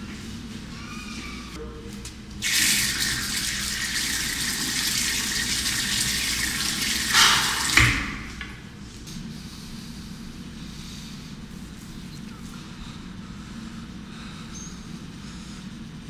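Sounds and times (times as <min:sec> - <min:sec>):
running water rushing: 0:02.4 - 0:08.5.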